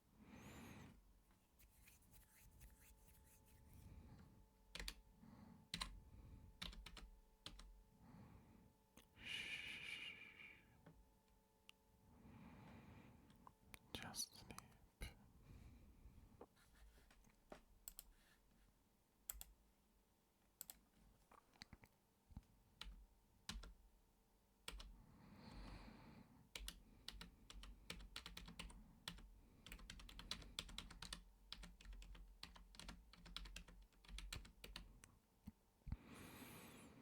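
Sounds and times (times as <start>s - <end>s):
soft breath: 0.1s - 1.0s, 3.5s - 4.5s, 5.2s - 6.6s, 8.0s - 10.8s, 12.0s - 13.5s, 15.0s - 16.5s, 25.0s - 27.1s, 35.8s - 37.0s
typing on computer keyboard: 4.8s - 5.0s, 5.7s - 6.0s, 6.6s - 7.7s, 19.3s - 19.6s, 22.8s - 23.8s, 24.7s - 24.9s, 26.5s - 34.9s.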